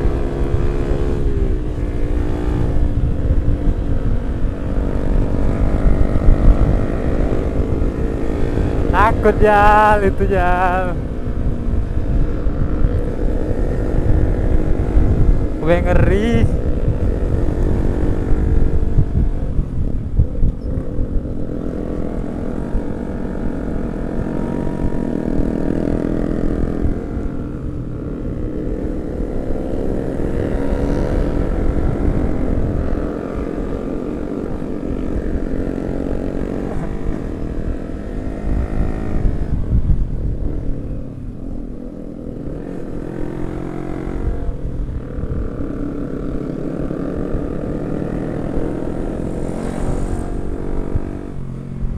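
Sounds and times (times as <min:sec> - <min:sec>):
low rumble of wind: 0:00.0 - 0:51.9
motorcycle engine running: 0:00.0 - 0:51.9.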